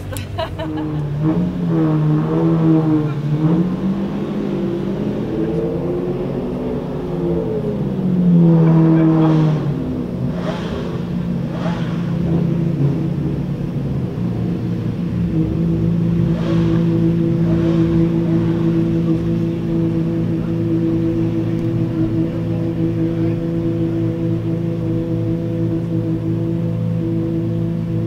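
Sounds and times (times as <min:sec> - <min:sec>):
car engine idling and revving: 0:00.0 - 0:28.0.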